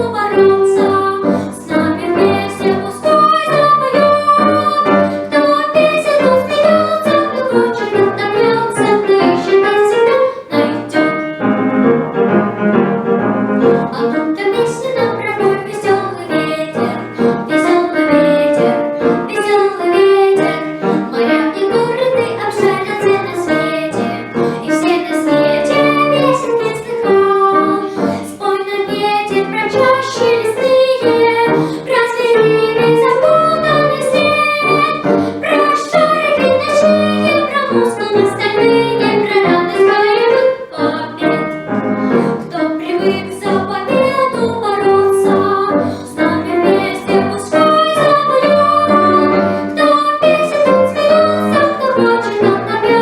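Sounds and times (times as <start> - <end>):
girl singing: 0.0 - 11.5, 13.6 - 53.0
piano accompaniment: 0.0 - 53.0.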